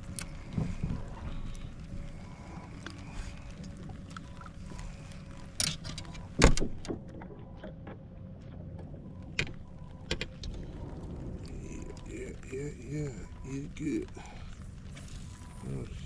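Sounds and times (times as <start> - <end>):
faint hum: 0.0 - 16.0
low rumble: 0.0 - 16.0.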